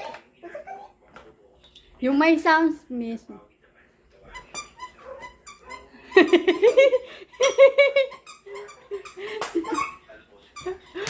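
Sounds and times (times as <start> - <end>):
toy squeaking: 4.3 - 6.7, 7.3 - 10.9.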